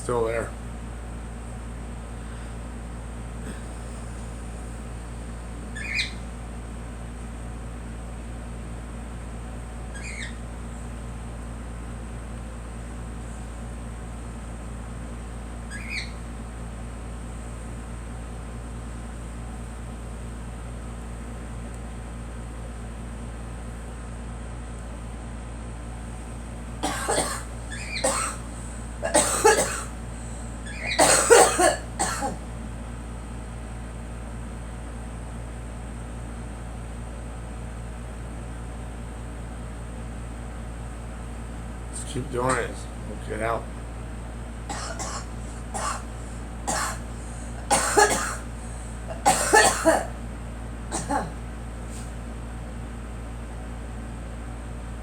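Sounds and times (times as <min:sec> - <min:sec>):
steady low hum: 0:00.0 - 0:55.0
girl coughing: 0:26.8 - 0:28.4, 0:29.0 - 0:29.9, 0:30.8 - 0:32.4, 0:44.7 - 0:46.1, 0:46.7 - 0:48.5, 0:49.1 - 0:50.2, 0:50.9 - 0:51.4.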